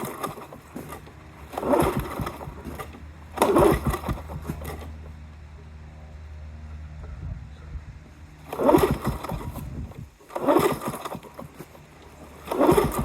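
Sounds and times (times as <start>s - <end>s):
starter cord pulls: 0.0s - 5.0s, 8.4s - 13.0s
low steady hum: 0.0s - 13.0s.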